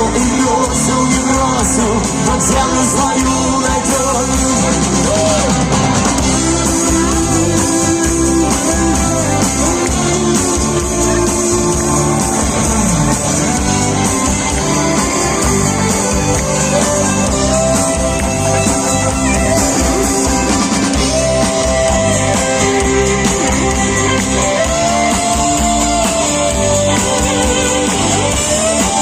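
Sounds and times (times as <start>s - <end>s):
rock band playing: 0.0s - 29.0s.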